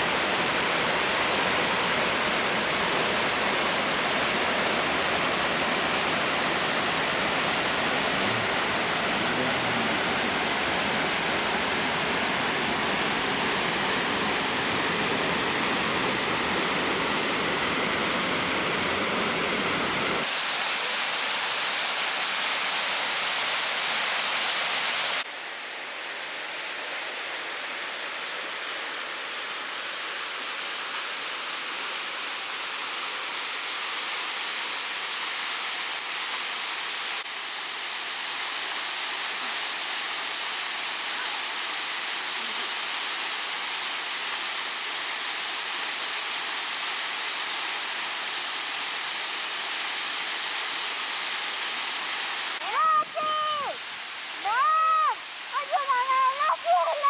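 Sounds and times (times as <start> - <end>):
waterfall rushing: 20.2 - 57.0.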